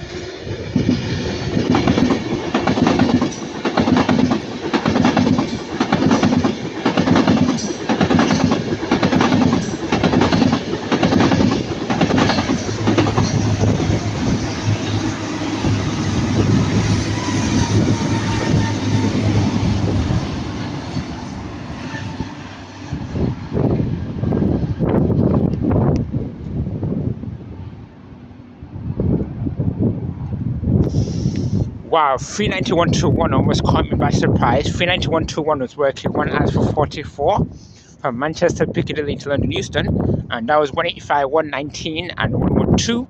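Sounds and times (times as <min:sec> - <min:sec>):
train wheels clacking: 0:00.7 - 0:22.4.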